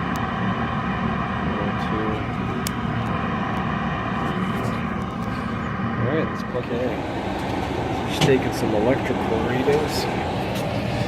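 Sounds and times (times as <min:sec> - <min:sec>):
gas furnace roaring: 0:00.0 - 0:11.0.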